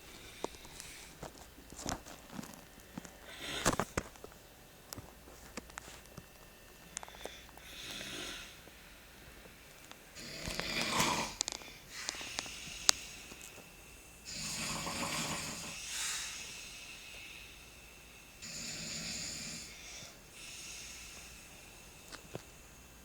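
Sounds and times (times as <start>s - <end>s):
person snoring: 7.6s - 8.6s, 10.2s - 12.7s, 14.2s - 17.1s, 18.4s - 22.0s.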